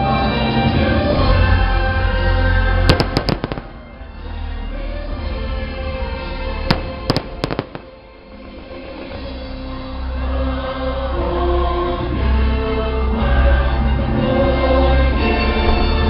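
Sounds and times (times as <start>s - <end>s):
orchestral music with choir: 0.0s - 16.0s
fireworks bangs: 2.9s - 4.1s, 6.7s - 9.2s.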